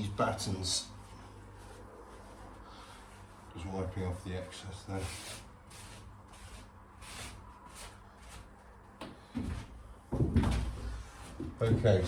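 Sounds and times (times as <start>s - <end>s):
wooden knocks and thumps: 9.0s - 12.0s.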